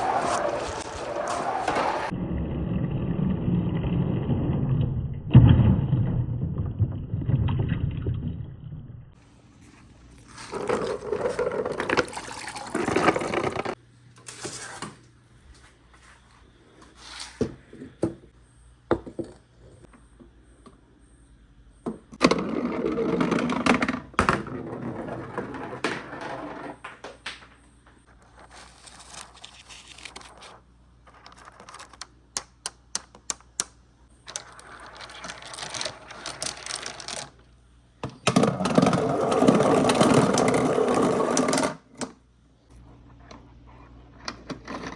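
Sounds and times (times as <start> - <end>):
marbles rolling on wooden track: 10.4 - 13.8, 22.2 - 28.1, 31.0 - 37.5, 38.2 - 41.9
balls clicking against wood: 31.1 - 37.5.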